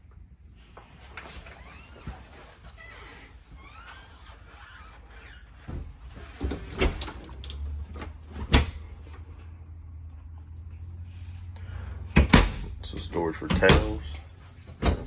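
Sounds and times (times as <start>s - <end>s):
door squeak: 1.2s - 9.0s, 12.2s - 14.2s
cabinet doors knocking and clattering: 12.2s - 15.0s.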